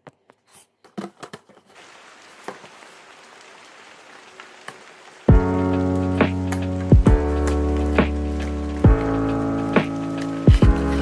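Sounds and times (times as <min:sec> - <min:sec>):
steady hiss: 0:01.8 - 0:11.0
loud music with sustained tones: 0:05.3 - 0:11.0.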